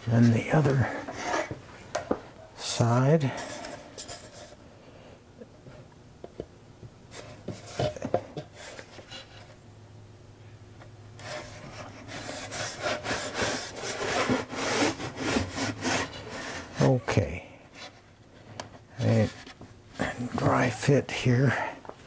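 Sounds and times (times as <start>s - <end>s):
wood scraping against wood: 0.1s - 2.2s, 11.2s - 18.0s.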